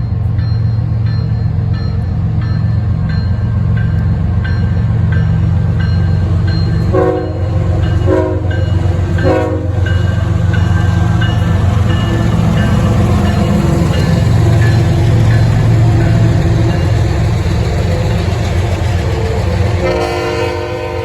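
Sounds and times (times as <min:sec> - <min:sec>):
freight train rumbling past: 0:00.0 - 0:21.0
train horn blasts: 0:06.9 - 0:09.9, 0:19.8 - 0:21.0.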